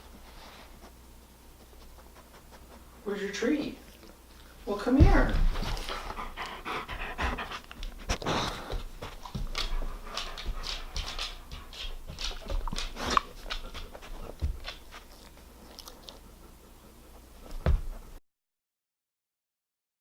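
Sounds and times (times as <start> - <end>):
dog clicks and snuffles: 7.4 - 16.3.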